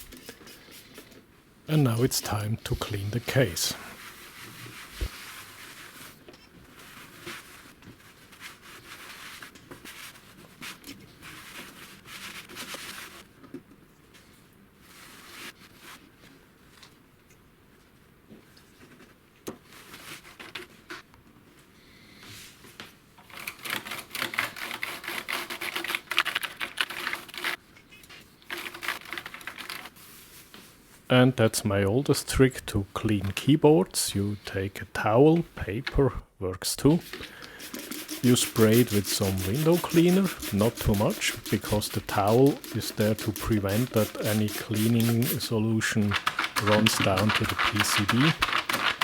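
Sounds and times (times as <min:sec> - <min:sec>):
rubbing and scrubbing strokes: 0:01.8 - 0:06.2, 0:36.8 - 0:49.0.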